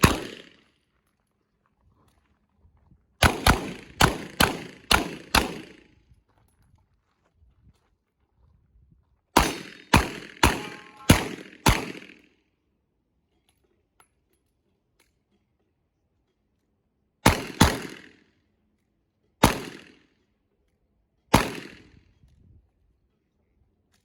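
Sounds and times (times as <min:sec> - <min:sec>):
gunshot echo: 0:00.0 - 0:00.6, 0:03.2 - 0:05.8, 0:09.4 - 0:12.2, 0:17.3 - 0:18.1, 0:19.4 - 0:20.0, 0:21.4 - 0:21.9.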